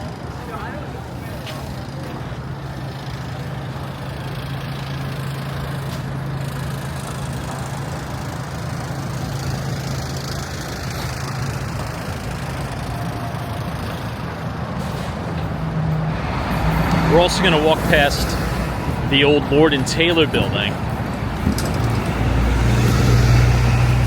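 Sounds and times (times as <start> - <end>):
street traffic noise: 0.0 - 24.0
vehicle engine idling: 0.0 - 24.0.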